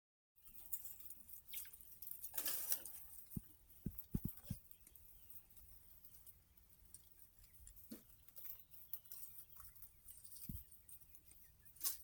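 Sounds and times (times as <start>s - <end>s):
chickens rustling: 0.4s - 12.0s
soft pecking taps: 3.3s - 4.6s.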